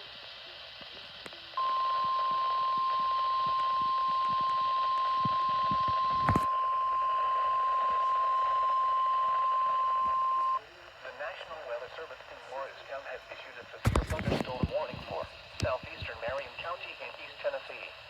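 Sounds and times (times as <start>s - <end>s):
radio hiss: 0.0s - 18.0s
steady high-pitched alarm tone: 1.6s - 10.6s.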